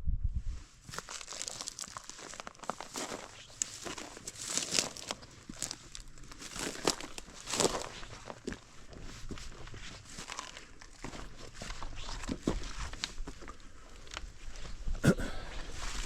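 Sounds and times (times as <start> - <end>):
footsteps on gravel: 0.9 - 13.7.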